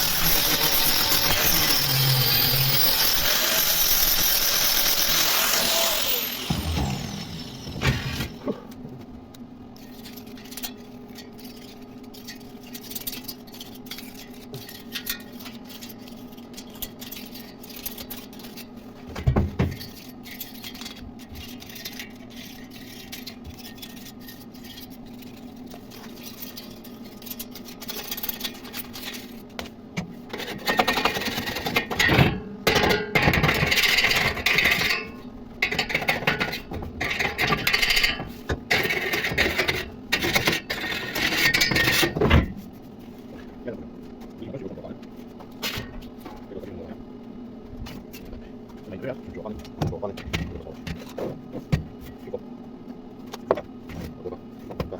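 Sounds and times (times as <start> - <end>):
rough metal scraping bursts: 0.0 - 8.5.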